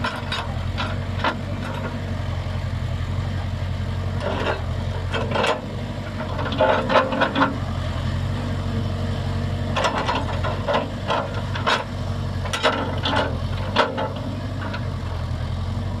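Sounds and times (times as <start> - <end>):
machine clanks and knocks: 0.0 - 2.1, 4.2 - 7.7, 9.7 - 14.9
diesel engine running: 0.0 - 16.0.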